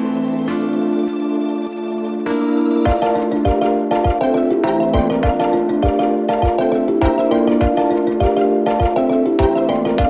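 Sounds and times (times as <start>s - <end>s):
marimba-like mallet melody: 2.3s - 10.0s
steady kick drum beat: 2.9s - 4.3s, 4.9s - 9.6s.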